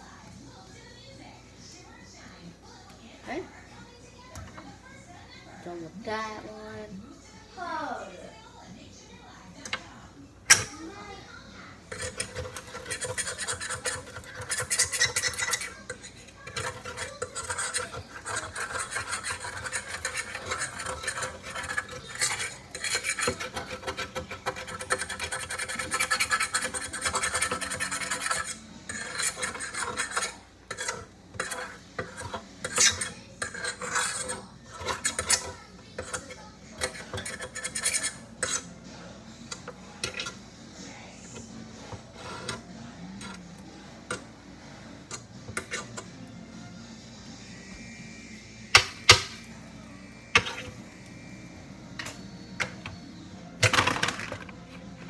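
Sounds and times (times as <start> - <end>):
utensil scraping a pan: 11.9 - 38.8, 39.5 - 40.5, 41.2 - 44.3, 45.0 - 46.1, 48.7 - 53.0.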